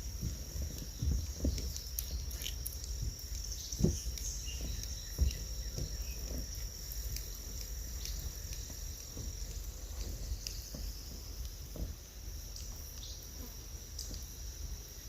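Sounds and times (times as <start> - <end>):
high insect trill: 0.0 - 15.0
short knocks: 2.9 - 12.2.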